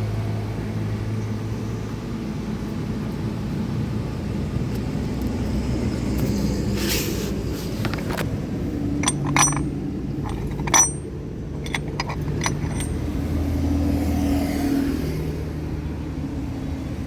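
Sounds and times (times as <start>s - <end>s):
low background rumble: 7.4s - 13.6s
metal parts clinking: 9.0s - 13.1s.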